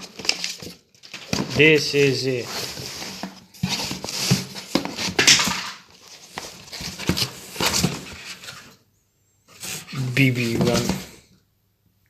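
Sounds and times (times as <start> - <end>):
packaging rustling: 0.0 - 8.8.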